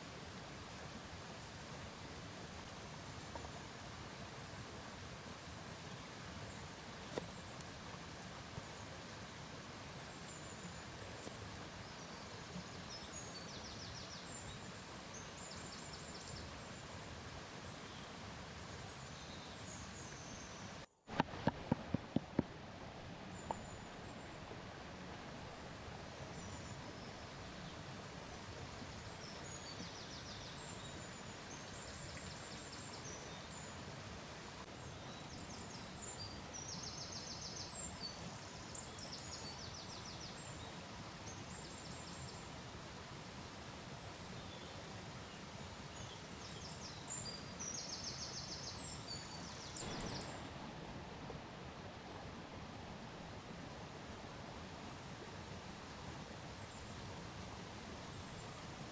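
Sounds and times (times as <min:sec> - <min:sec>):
outdoor hiss: 0:00.0 - 0:58.9.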